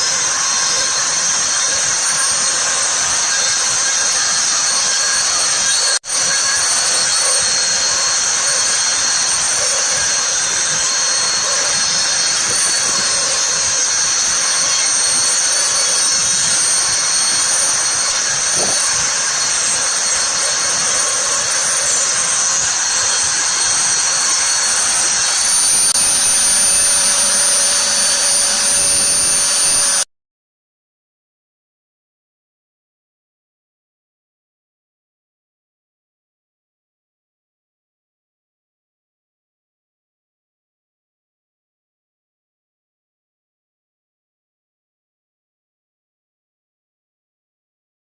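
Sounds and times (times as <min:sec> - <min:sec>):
router high-pitched whine: 0:00.0 - 0:30.1.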